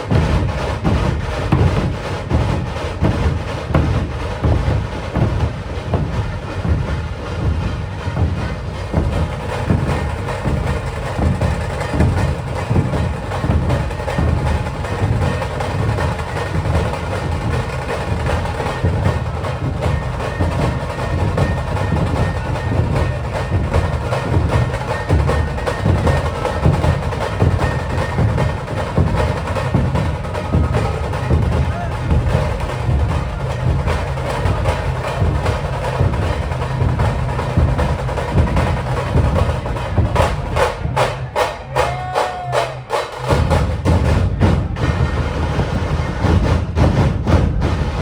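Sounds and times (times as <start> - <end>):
deep barrel drums beating: 0.0 - 48.0
rapid drum strokes: 0.0 - 48.0.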